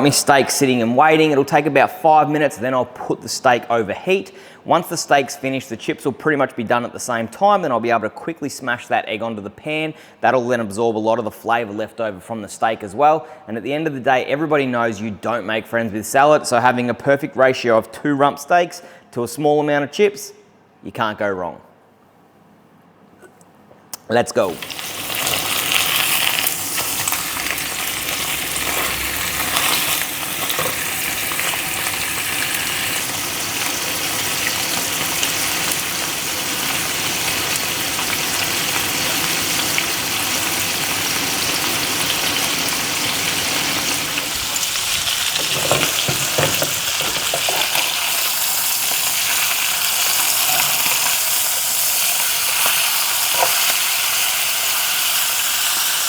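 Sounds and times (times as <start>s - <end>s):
steaks sizzling in frying pan: 24.5s - 56.0s.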